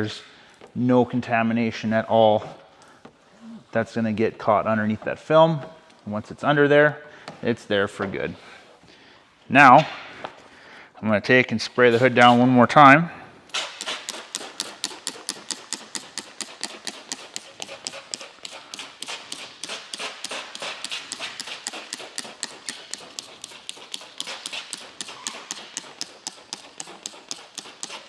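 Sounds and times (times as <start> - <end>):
spray bottle hissing sprays: 13.5 - 28.0.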